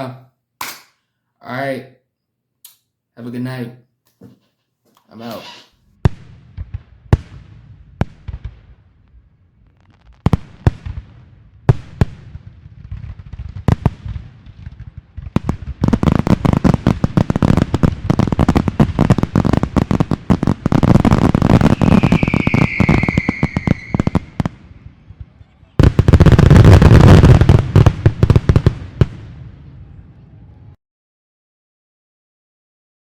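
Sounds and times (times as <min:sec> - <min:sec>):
firework bangs: 0:05.1 - 0:30.5
firework crackling barrage: 0:05.1 - 0:30.6
firework whistle: 0:21.0 - 0:24.6.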